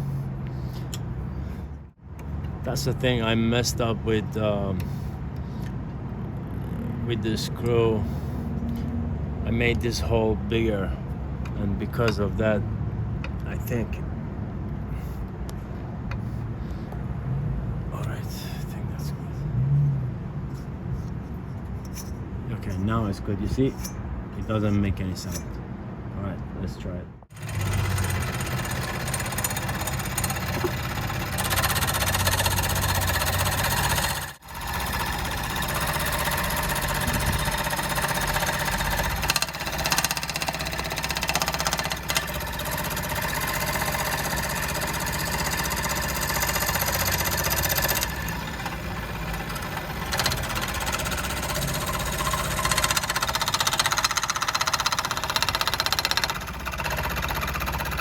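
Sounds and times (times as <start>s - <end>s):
jig saw running: 27.3s - 58.0s.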